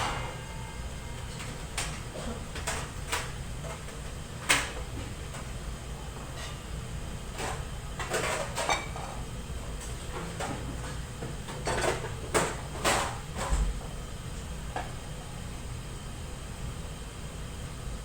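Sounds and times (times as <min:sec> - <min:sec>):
steady low hum: 0:00.0 - 0:08.0.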